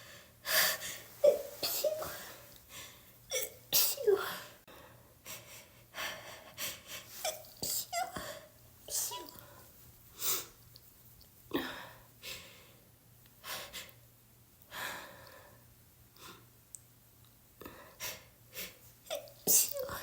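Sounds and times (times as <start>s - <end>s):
person sneezing: 1.1s - 2.4s, 3.3s - 4.4s.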